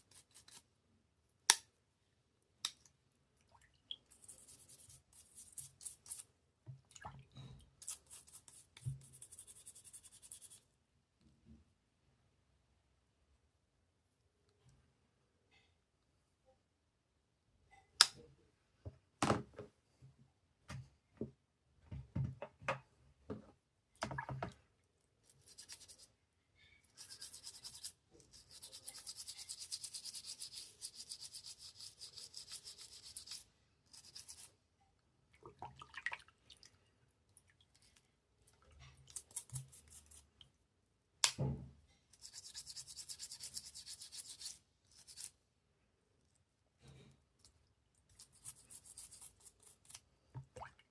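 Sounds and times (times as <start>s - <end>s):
brush scrubbing knife: 4.1s - 6.3s, 26.9s - 34.5s, 39.0s - 40.3s, 42.2s - 45.4s, 48.1s - 50.0s.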